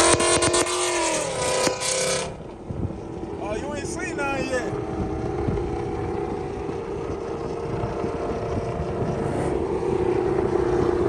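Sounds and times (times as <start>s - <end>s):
car engine cruising drone: 0.0s - 11.0s
road noise: 0.0s - 11.0s.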